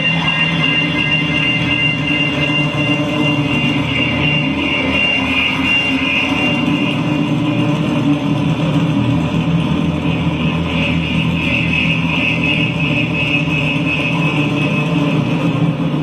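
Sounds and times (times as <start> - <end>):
thin high tone: 0.0 - 7.3
low machine-like noise: 0.0 - 16.0.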